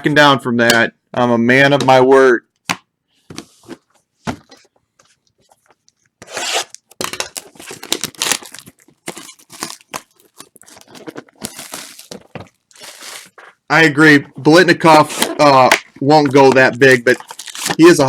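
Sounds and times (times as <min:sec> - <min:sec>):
wrapper ripping and crinkling: 0:06.3 - 0:13.6, 0:14.8 - 0:18.0.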